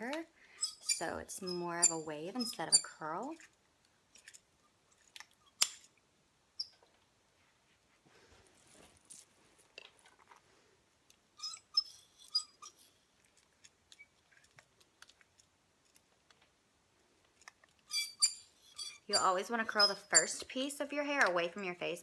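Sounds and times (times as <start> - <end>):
curling iron clinking: 0.0 - 3.4, 18.0 - 21.6.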